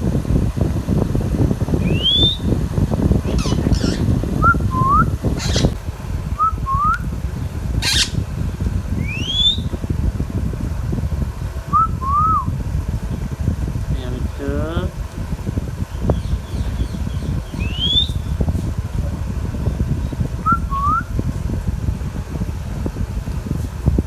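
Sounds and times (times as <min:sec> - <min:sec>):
parrot squawks: 0:01.8 - 0:02.5, 0:03.2 - 0:05.8, 0:07.8 - 0:08.2
parrot whistling: 0:01.8 - 0:02.6, 0:03.2 - 0:05.8, 0:06.4 - 0:07.0, 0:07.8 - 0:08.2, 0:09.0 - 0:09.7, 0:11.7 - 0:12.5, 0:16.2 - 0:18.3, 0:20.4 - 0:21.1.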